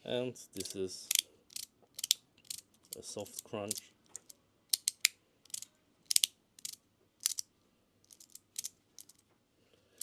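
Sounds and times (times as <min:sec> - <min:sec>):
magnetic pieces snapping together: 0:00.6 - 0:07.4.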